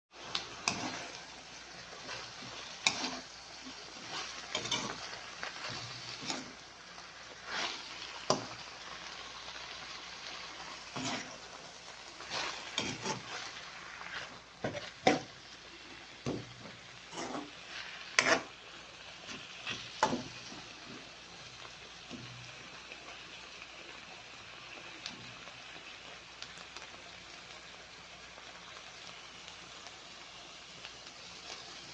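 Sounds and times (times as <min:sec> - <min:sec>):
food sizzling in a pan: 0:00.1 - 0:31.9
utensil scraping against pan: 0:00.3 - 0:01.3, 0:02.0 - 0:06.6, 0:07.4 - 0:08.6, 0:10.9 - 0:11.5, 0:12.2 - 0:15.3, 0:16.2 - 0:18.5.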